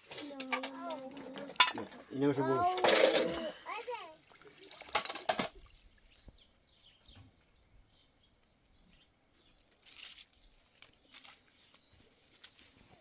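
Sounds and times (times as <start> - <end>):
soft rustles: 9.4 - 13.0.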